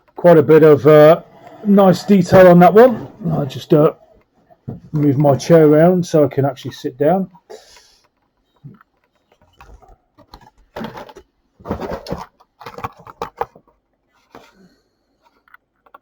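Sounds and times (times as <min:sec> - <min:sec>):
chair creaking: 0:00.0 - 0:04.0, 0:04.7 - 0:05.9
chair scraping: 0:00.3 - 0:04.0, 0:04.7 - 0:06.0.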